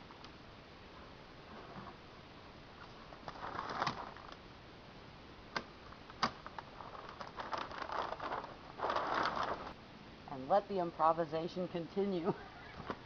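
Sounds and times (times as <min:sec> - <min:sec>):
plastic sheeting rustling: 0:02.8 - 0:04.4, 0:06.0 - 0:09.8.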